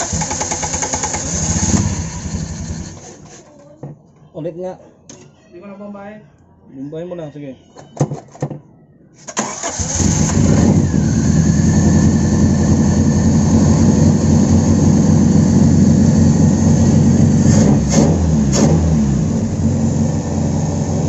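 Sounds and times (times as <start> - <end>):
starter cranking car engine: 0.0 - 3.1, 9.3 - 14.7
car engine idling fast: 10.9 - 17.4.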